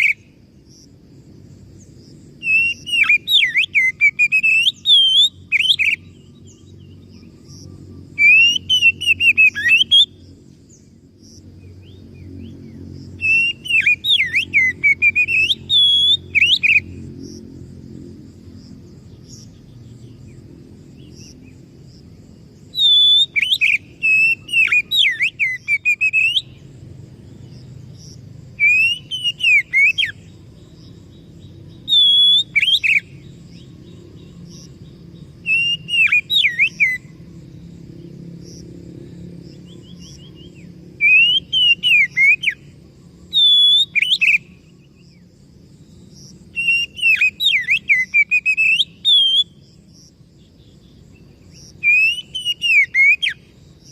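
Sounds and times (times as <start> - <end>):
bird singing whistled notes: 0.0 - 0.9, 2.4 - 17.4, 22.6 - 26.7, 27.3 - 37.2, 39.5 - 45.3, 46.1 - 50.1, 50.9 - 53.9.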